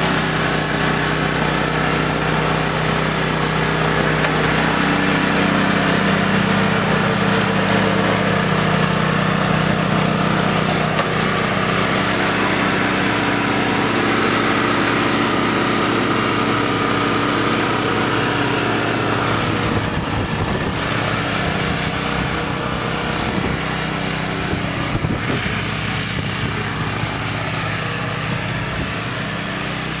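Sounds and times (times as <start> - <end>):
snowblower engine running: 0.0 - 30.0.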